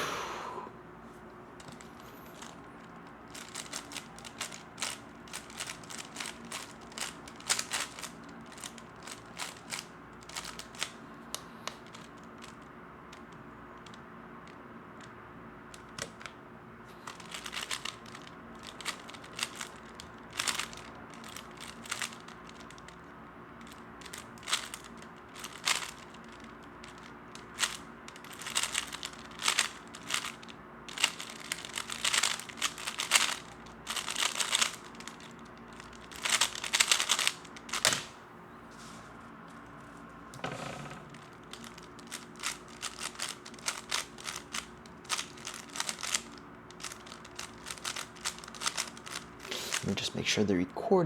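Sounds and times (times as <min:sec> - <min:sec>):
puzzle cube clicking: 0:31.0 - 0:35.2, 0:35.8 - 0:38.1, 0:40.5 - 0:50.0.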